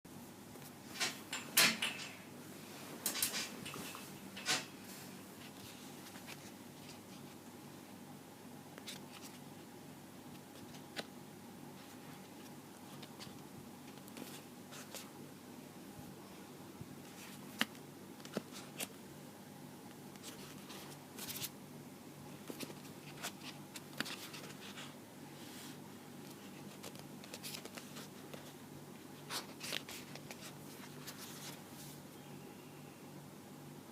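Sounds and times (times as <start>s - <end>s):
object being handled: 0.5s - 7.4s.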